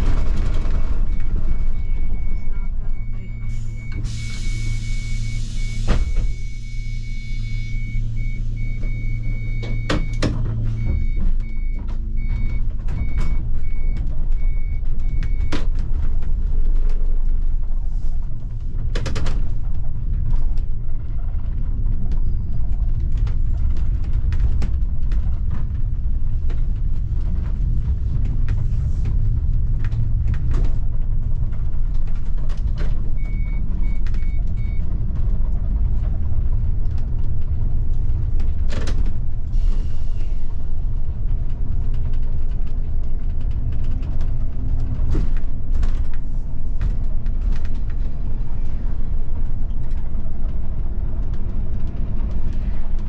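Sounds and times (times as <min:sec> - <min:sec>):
bus engine humming: 0:00.0 - 0:53.0
road noise: 0:00.0 - 0:53.0
high pulsing beep: 0:01.1 - 0:10.2.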